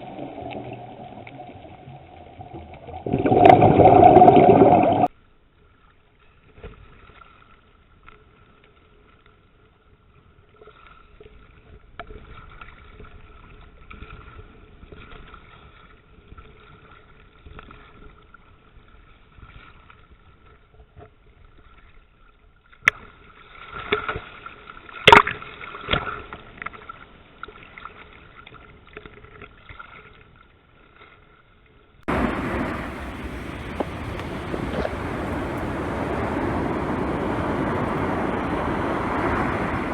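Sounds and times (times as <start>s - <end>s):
faint underwater hum: 0.0s - 5.1s, 32.1s - 39.9s
loud steady rushing noise: 32.1s - 39.9s.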